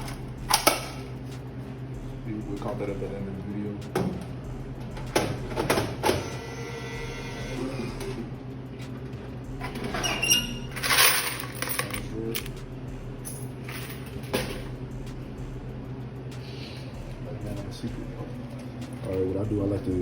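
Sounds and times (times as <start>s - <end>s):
steady low hum: 0.0s - 20.0s
coins clinking: 9.7s - 12.6s, 13.2s - 14.7s.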